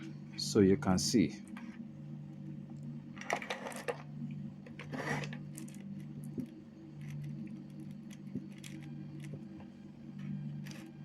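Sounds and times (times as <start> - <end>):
steady low hum: 0.0 - 11.0.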